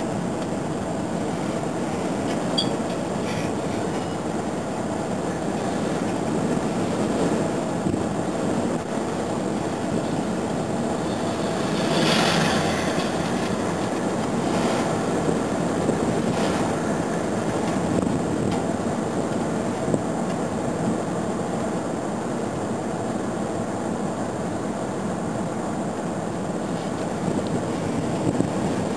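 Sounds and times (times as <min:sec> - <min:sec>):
road and engine rumble: 0:00.0 - 0:28.9.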